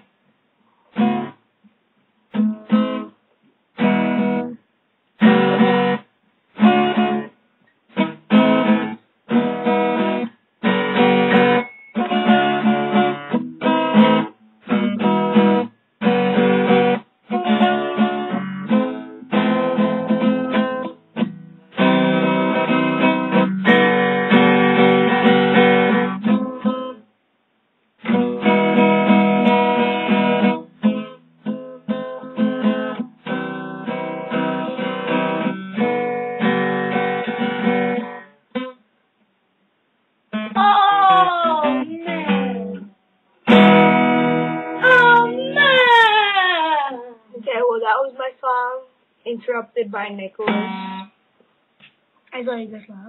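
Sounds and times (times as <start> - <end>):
guitar strummed in chords: 1.0 - 1.4, 2.3 - 3.2, 3.8 - 4.6, 5.2 - 27.0, 28.0 - 38.8, 40.3 - 46.0, 50.4 - 51.1.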